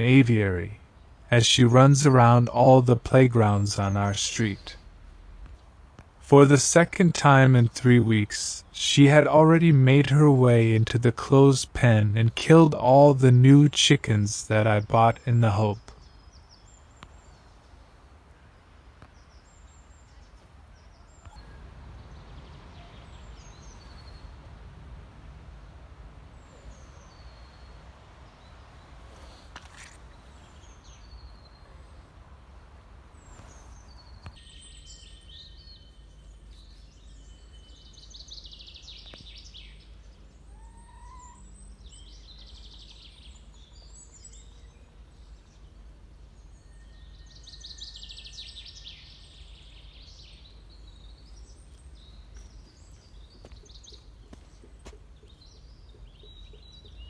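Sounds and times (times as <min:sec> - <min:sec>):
low background rumble: 0:00.0 - 0:29.4
small birds chirping and trilling: 0:00.0 - 0:57.0.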